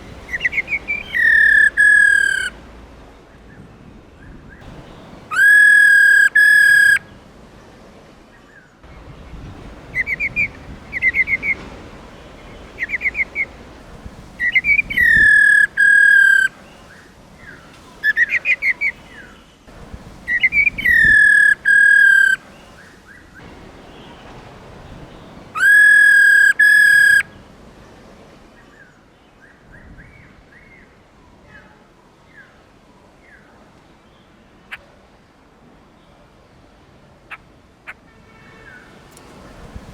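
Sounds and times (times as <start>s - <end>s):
bird rattling trills: 0.3s - 2.5s, 5.3s - 7.0s, 14.4s - 16.5s, 20.3s - 22.4s
bird whistled notes: 0.3s - 2.5s, 5.3s - 7.0s, 10.0s - 11.6s, 14.4s - 16.5s, 20.3s - 22.4s, 25.6s - 27.2s.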